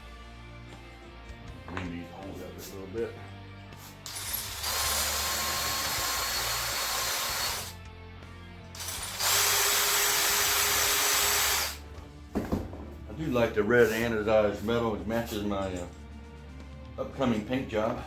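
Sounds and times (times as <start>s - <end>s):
power drill running: 4.0s - 7.8s, 8.8s - 11.8s.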